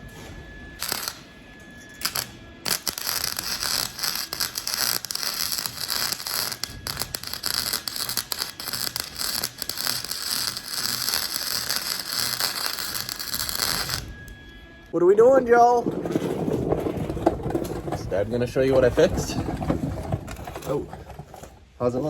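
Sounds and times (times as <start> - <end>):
welding arc hissing and popping: 0.8 - 1.2, 2.0 - 14.1.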